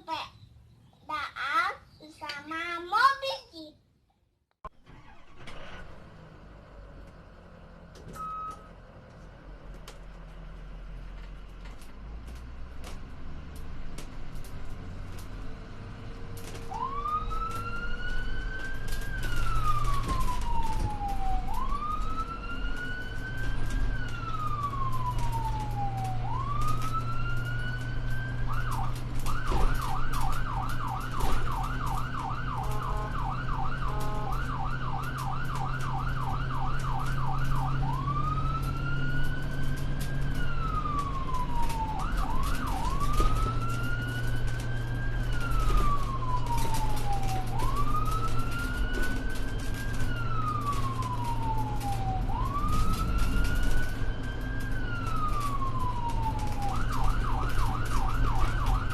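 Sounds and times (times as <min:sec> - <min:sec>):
emergency siren wailing and yelping: 0:04.9 - 0:05.8, 0:16.4 - 0:58.9.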